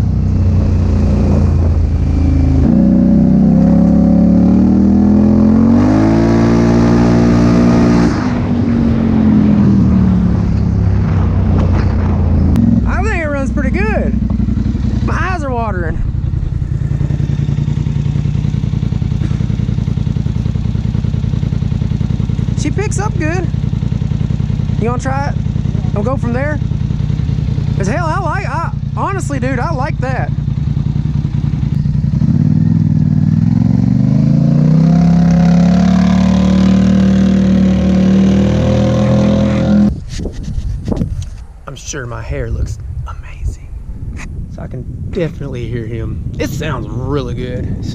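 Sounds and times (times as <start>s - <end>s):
atv engine idling: 12.2s - 35.0s.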